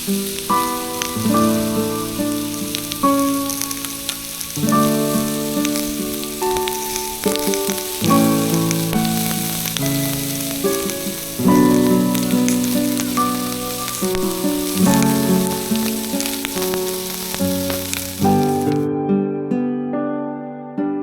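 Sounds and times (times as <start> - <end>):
fire crackling: 0.0 - 18.9
food sizzling on a wood fire: 0.0 - 18.9.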